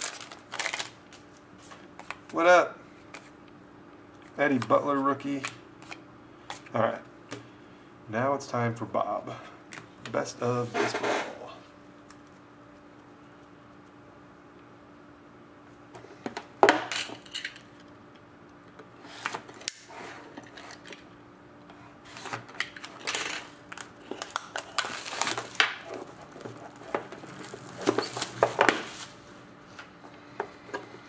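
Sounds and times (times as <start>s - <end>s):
packaging rustling: 0.0s - 1.2s, 22.1s - 29.2s.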